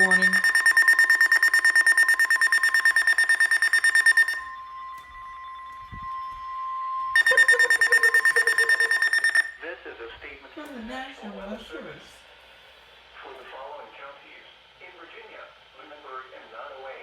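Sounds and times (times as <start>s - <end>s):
rapid alarm beeping: 0.0s - 9.6s
steady warning alarm tone: 0.0s - 9.6s.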